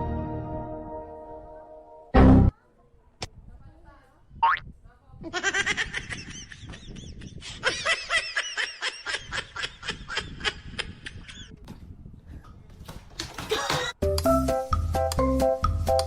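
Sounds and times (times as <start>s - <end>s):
person laughing hard: 5.3s - 11.5s.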